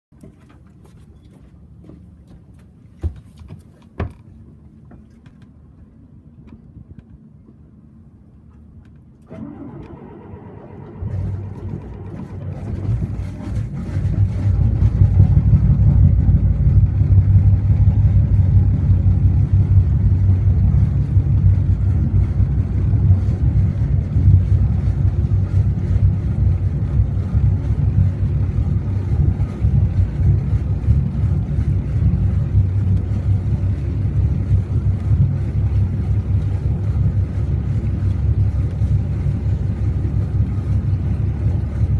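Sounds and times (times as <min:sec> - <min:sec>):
diesel engine cranking and starting: 0:09.2 - 0:39.4.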